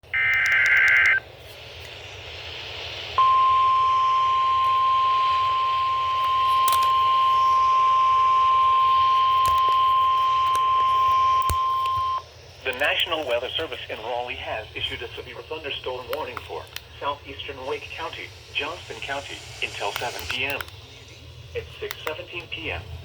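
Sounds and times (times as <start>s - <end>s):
radio hiss: 0.0s - 23.0s
steady alarm tone: 3.2s - 12.2s
warbling digital data tones: 16.9s - 21.7s.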